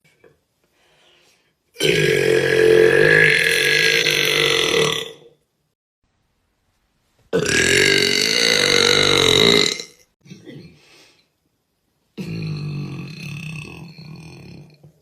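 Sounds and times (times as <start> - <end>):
woman burping loudly: 1.8 - 5.3, 7.4 - 10.8, 12.2 - 14.9.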